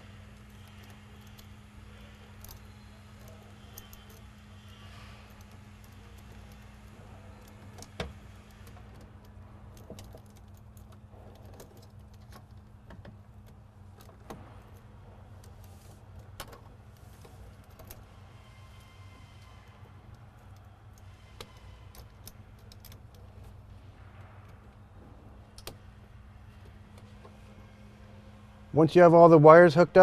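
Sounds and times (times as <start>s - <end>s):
small clicks and rattles: 0.0s - 27.4s
steady low hum: 0.0s - 30.0s.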